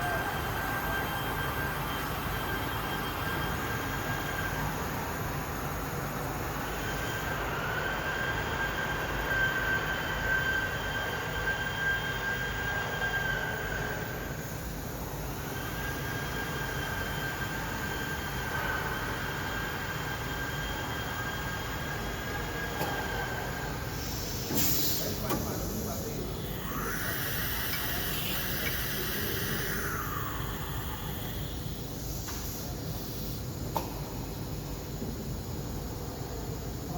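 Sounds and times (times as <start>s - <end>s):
cnc router high whine: 0.0s - 36.9s
machining noise: 24.1s - 31.8s.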